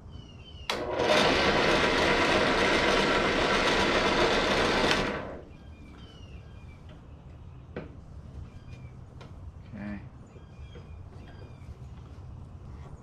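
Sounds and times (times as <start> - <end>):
drill press motor running: 0.7 - 5.5.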